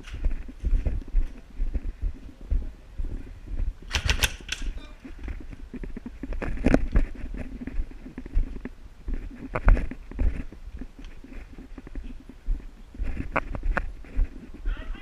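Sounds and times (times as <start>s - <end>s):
footsteps: 0.0s - 15.0s
runs of sharp clicks: 3.9s - 4.8s.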